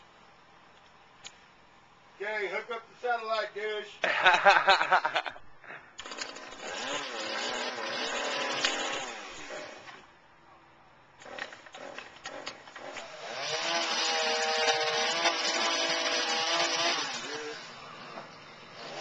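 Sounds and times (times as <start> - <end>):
chainsaw revving and cutting: 6.0 - 10.1, 11.2 - 19.0.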